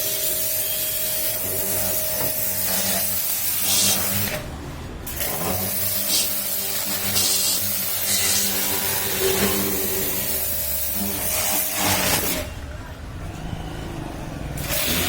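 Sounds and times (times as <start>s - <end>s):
pressure washer motor hum: 5.1s - 15.0s.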